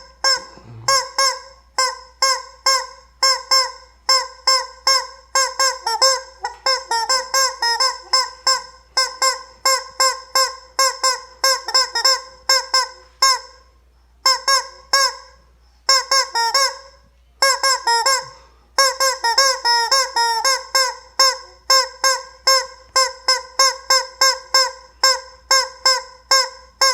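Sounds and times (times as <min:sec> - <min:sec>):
rubber chicken toy squawking: 0:00.0 - 0:26.9.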